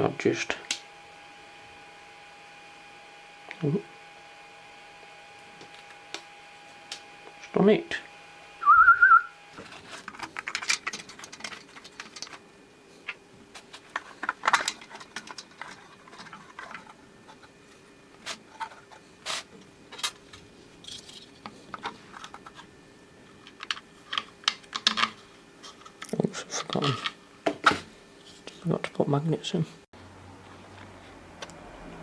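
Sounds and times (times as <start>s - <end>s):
plastic parts clicking and rattling: 9.6s - 12.4s, 13.0s - 17.5s, 18.2s - 19.0s, 19.9s - 22.7s, 23.3s - 27.9s.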